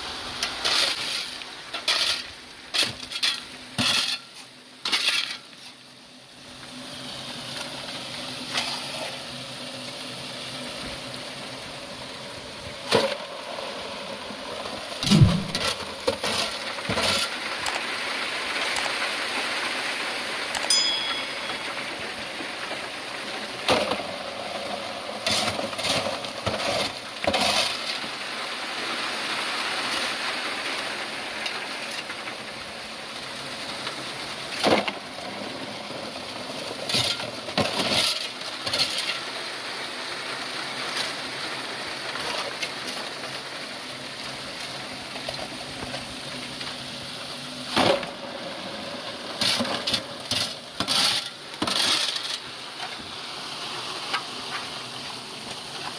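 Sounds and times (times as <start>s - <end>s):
steady hiss: 0.0s - 55.9s
stones and gravel knocking: 15.0s - 19.4s.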